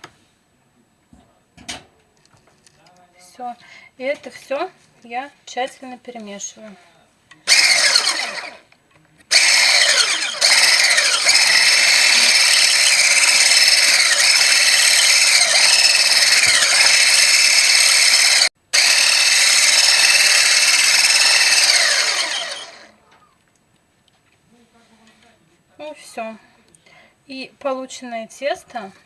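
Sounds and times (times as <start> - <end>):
electric mixer motor whine: 7.5 - 8.6, 9.3 - 22.9.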